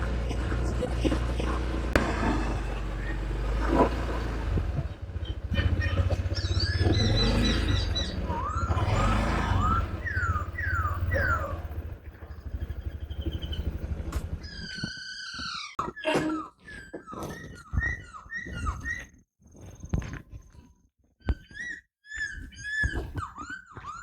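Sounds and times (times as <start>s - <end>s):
motor throbbing: 0.0s - 14.7s
high chirping calls: 2.0s - 15.8s.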